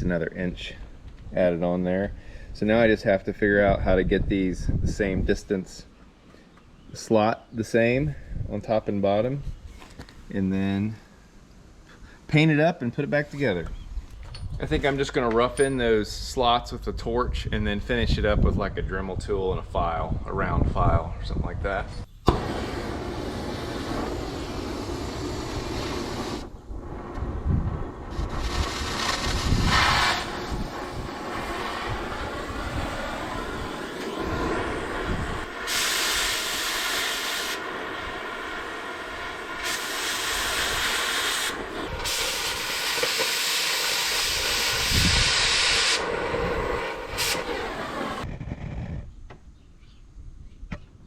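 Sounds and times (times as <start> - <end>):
cutting torch hissing: 22.2 - 48.3.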